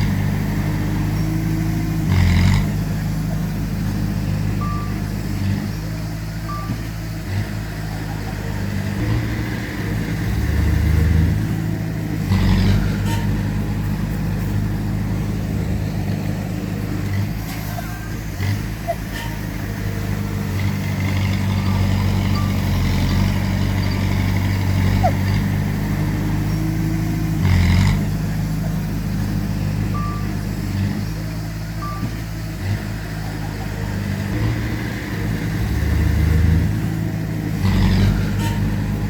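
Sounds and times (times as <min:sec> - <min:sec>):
heavy diesel machinery running: 0:00.0 - 0:39.0
short high beeps: 0:30.0 - 0:30.4.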